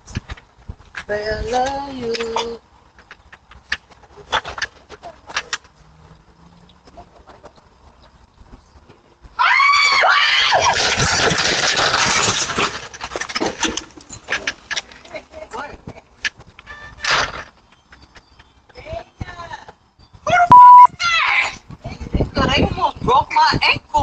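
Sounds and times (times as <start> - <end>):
person screaming and shrieking: 9.4 - 10.7.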